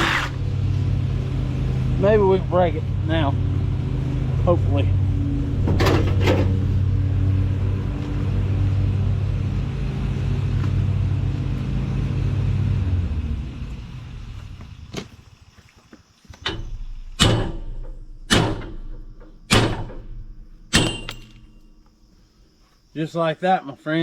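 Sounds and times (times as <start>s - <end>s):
engine running: 0.0s - 22.3s
sharp ringing blows on metal: 16.5s - 22.1s.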